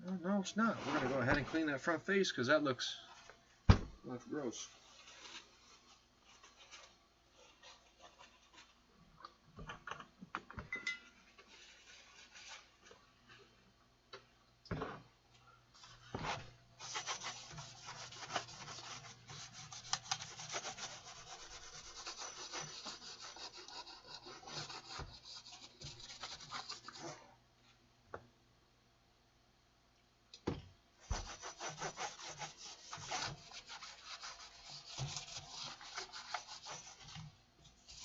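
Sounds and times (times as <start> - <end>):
scrubbing strokes: 15.8 - 27.2, 31.1 - 38.0.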